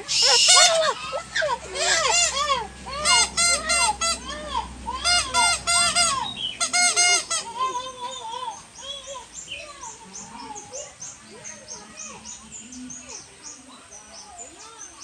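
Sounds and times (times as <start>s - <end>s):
squawking animal calls: 0.0s - 9.3s.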